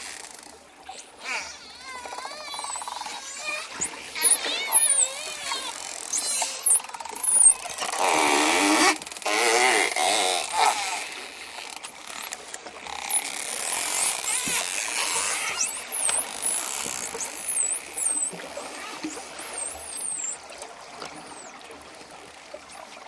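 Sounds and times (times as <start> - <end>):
dolphin click train: 0.0 - 22.9
dolphin buzzy squawks: 0.9 - 11.4, 12.0 - 20.6
dolphin whistles: 1.2 - 8.9, 12.2 - 13.3, 14.0 - 20.6, 21.2 - 21.6.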